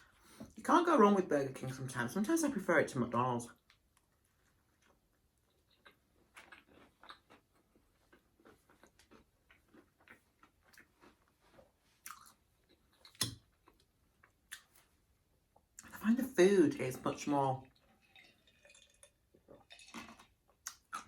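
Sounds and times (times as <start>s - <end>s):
wet chewing: 3.6s - 14.8s, 17.8s - 21.0s.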